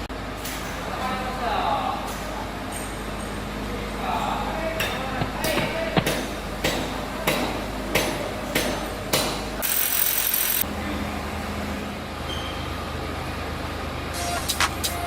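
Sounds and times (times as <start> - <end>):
sharp metallic knocks: 4.8 - 10.6.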